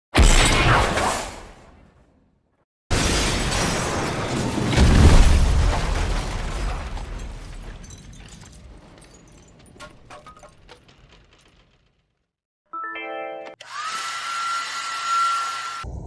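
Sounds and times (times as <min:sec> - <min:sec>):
explosion blast: 0:02.9 - 0:08.8.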